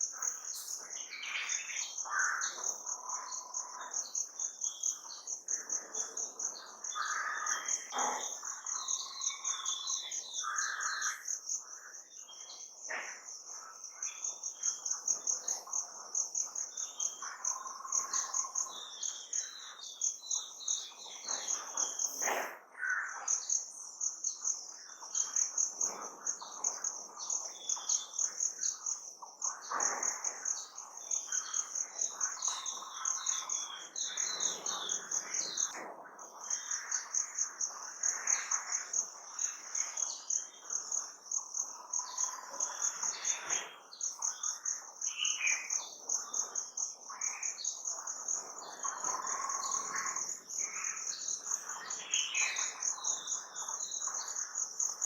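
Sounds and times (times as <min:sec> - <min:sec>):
small birds chirping: 0:00.0 - 0:55.0
insect trilling: 0:44.0 - 0:55.0.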